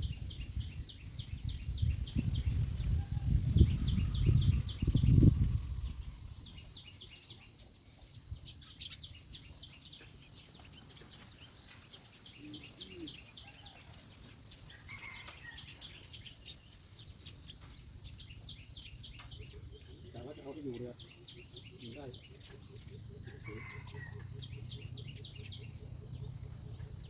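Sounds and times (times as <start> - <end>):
high-pitched insect drone: 0.0 - 27.0
rapid chirping calls: 14.7 - 27.0.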